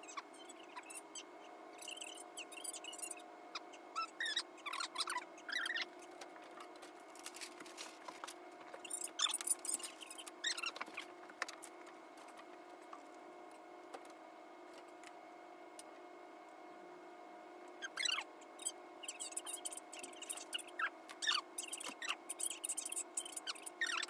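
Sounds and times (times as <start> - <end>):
sped-up voices squeaking: 0.0 - 6.6, 8.8 - 11.1, 17.8 - 24.0
faint steady hum: 0.0 - 24.0.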